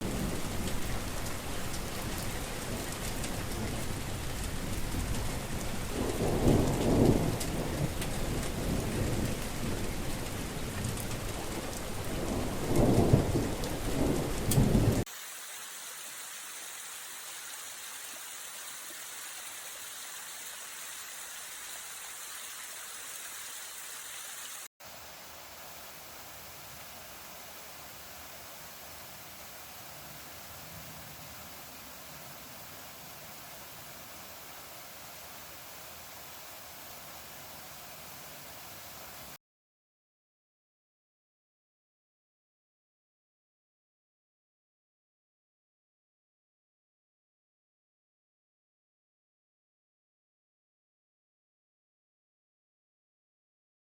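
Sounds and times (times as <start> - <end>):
low rolls of thunder: 0.0 - 15.0
heavy rain falling: 0.0 - 24.7.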